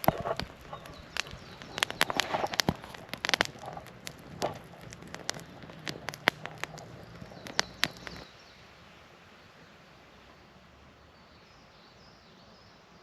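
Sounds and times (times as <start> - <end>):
wood fire crackling: 0.0 - 8.3.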